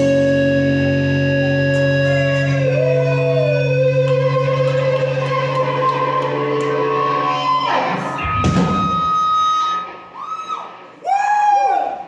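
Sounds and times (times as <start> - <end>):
electric guitars sustained chord: 0.0 - 10.0
noisy crash: 7.9 - 9.5.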